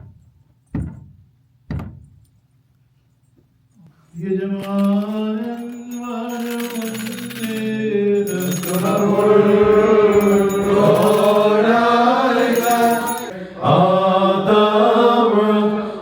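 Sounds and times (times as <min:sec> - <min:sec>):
voices chanting: 0:08.0 - 0:16.0.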